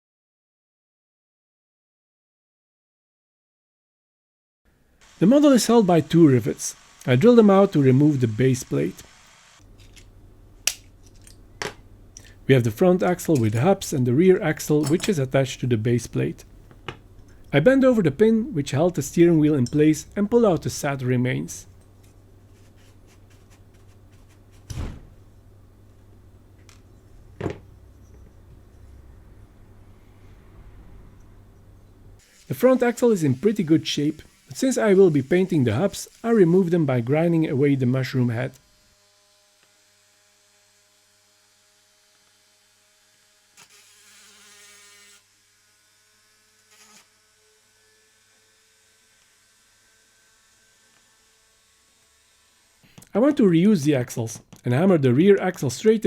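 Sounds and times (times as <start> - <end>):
rotary tool grinding metal: 32.2 - 36.8, 43.6 - 45.3, 46.3 - 52.8.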